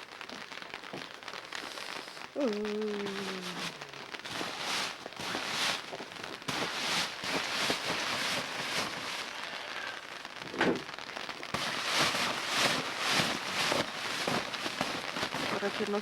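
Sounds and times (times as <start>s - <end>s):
brush scraping wet snow: 3.1s - 9.4s, 11.6s - 16.0s
thump: 10.6s - 10.8s.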